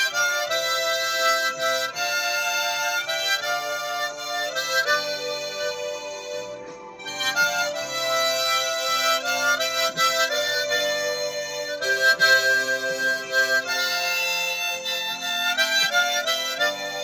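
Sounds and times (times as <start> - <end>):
harmonica playing a hymn melody: 0.0 - 17.0.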